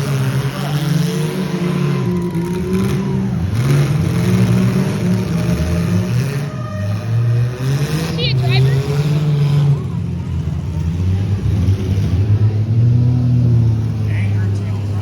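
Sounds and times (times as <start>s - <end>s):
car engines revving: 0.0s - 15.0s.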